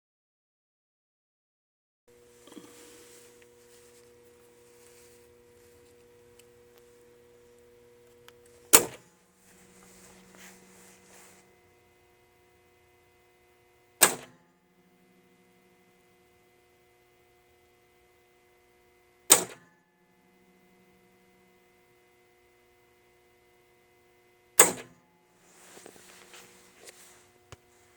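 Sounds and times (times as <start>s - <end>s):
faint electrical hum: 2.1s - 27.9s
pinball machine clacking: 14.0s - 14.4s, 19.3s - 19.8s.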